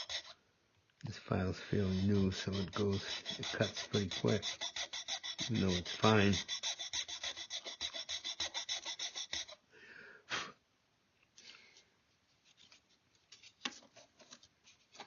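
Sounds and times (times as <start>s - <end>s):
hand file strokes: 0.0s - 0.4s, 1.2s - 9.6s
scrape: 1.5s - 9.5s.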